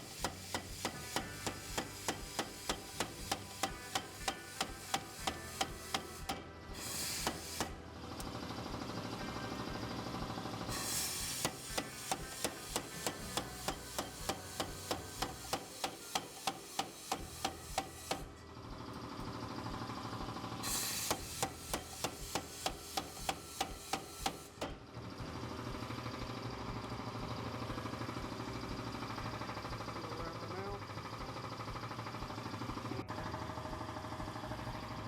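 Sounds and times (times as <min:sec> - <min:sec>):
hammer striking steel: 0:00.0 - 0:07.8, 0:10.7 - 0:18.4, 0:20.6 - 0:24.8.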